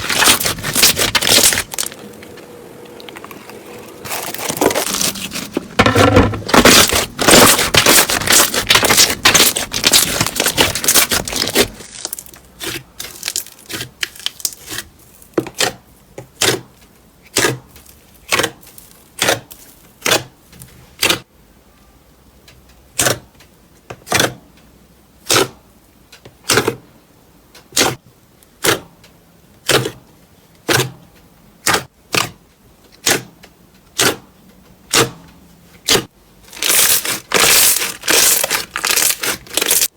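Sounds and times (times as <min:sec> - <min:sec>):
crisp crackling pops: 0:00.0 - 0:05.8, 0:06.4 - 0:14.7, 0:36.5 - 0:39.9
crunchy slime crackling: 0:00.0 - 0:20.3, 0:35.9 - 0:39.9.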